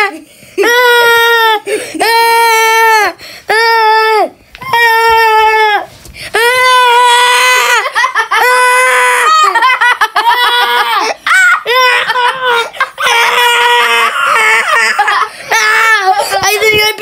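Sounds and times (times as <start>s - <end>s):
child laughing in squeals: 6.4s - 16.2s.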